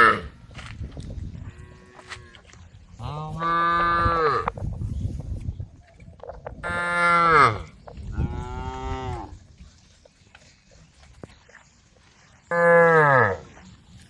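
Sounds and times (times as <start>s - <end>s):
cows mooing: 0.0s - 0.3s, 1.4s - 4.6s, 6.6s - 9.4s, 12.5s - 13.5s.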